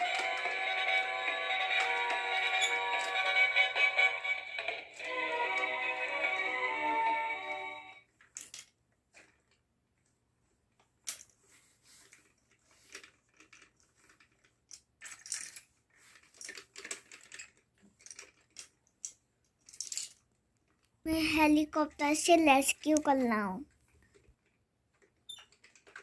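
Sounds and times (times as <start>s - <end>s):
plastic pieces clicking: 8.2s - 9.6s, 12.2s - 21.0s, 24.0s - 26.0s.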